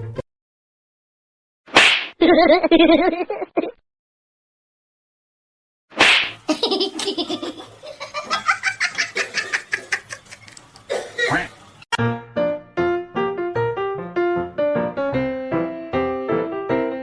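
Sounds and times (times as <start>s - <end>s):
person laughing hard: 6.5s - 10.6s
piano music: 12.0s - 17.0s.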